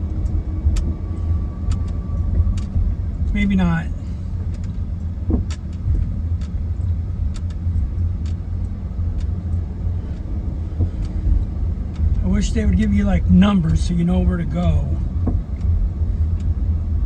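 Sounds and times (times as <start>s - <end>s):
car engine and road rumble: 0.0s - 17.0s
light clicks and rattles: 4.4s - 12.3s.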